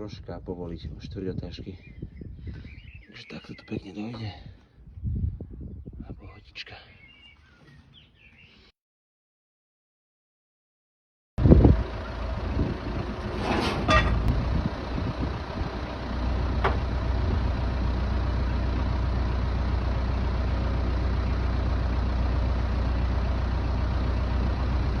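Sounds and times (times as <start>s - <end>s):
vehicle engine idling: 11.4s - 25.0s.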